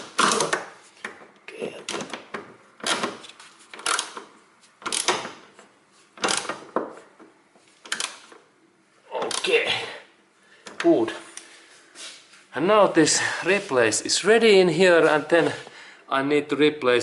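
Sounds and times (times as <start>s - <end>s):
ratchet wrench clicking: 3.8s - 4.2s.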